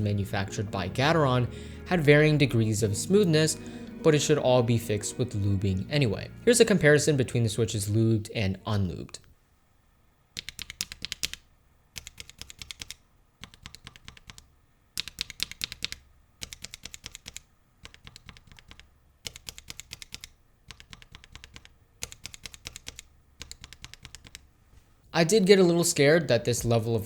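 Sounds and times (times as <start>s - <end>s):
mechanical keyboard clacking: 10.4s - 11.4s, 12.0s - 24.4s.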